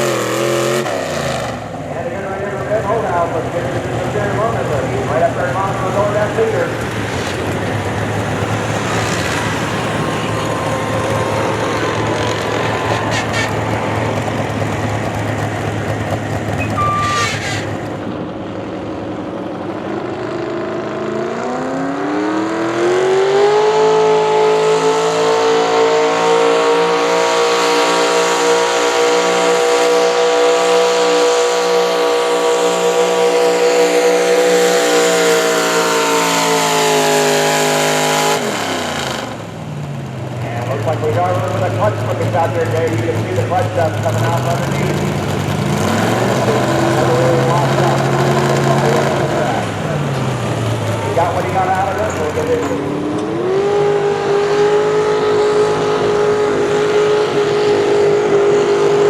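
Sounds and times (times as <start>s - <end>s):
tractor engine at full throttle: 0.0s - 59.0s.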